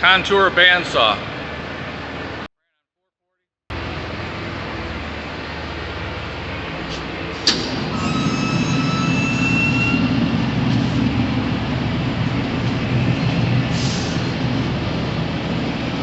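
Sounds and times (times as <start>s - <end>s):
shop hum: 3.7s - 16.0s.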